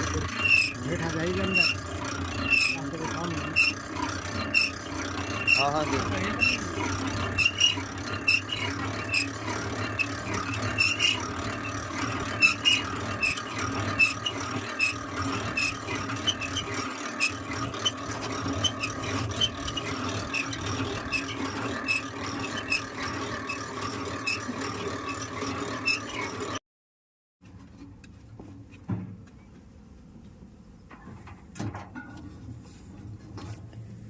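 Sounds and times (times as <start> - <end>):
honey extractor humming: 0.0 - 26.6.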